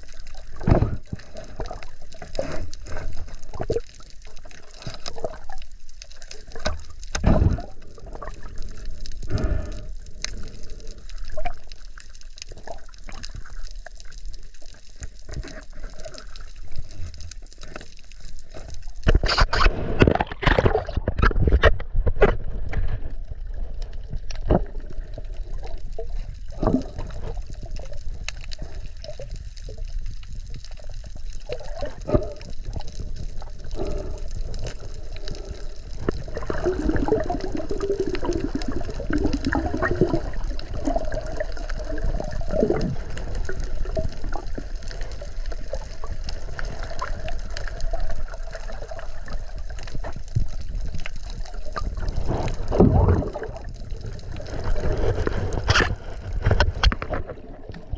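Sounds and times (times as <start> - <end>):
water sloshing and bubbling: 0.0 - 57.9
splashing and knocks: 0.6 - 1.3, 19.0 - 23.0, 52.3 - 53.6.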